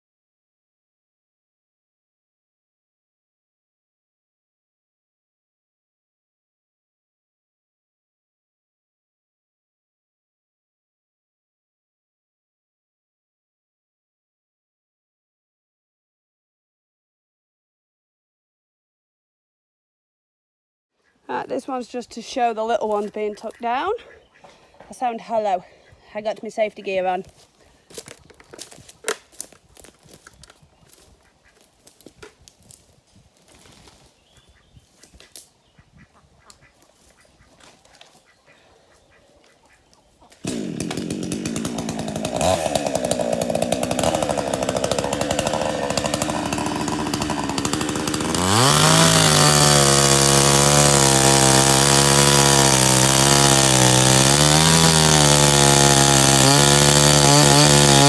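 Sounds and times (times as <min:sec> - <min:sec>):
chainsaw running and revving: 0:24.9 - 0:34.0, 0:40.3 - 0:58.0.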